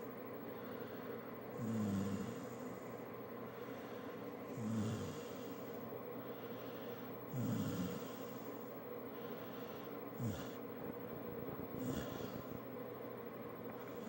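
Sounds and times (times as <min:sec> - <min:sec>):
quiet breathing: 0:00.0 - 0:12.7, 0:13.6 - 0:14.0
snoring: 0:01.6 - 0:02.6, 0:04.5 - 0:05.7, 0:06.6 - 0:08.5, 0:09.3 - 0:10.6, 0:11.7 - 0:12.6.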